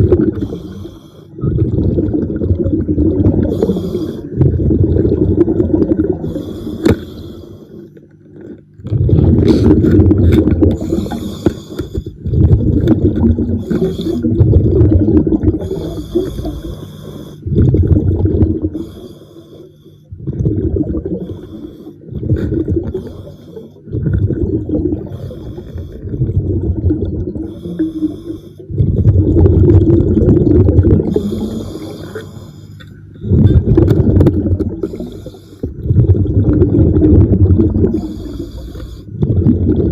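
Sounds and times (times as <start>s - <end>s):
bubbles rumbling underwater: 0.0s - 19.2s, 20.1s - 39.9s
regulator breath hissing: 3.5s - 4.3s, 31.1s - 32.9s, 38.0s - 39.1s.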